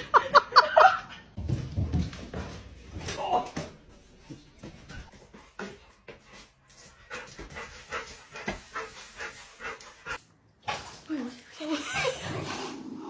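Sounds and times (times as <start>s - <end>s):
dog panting: 5.1s - 10.2s.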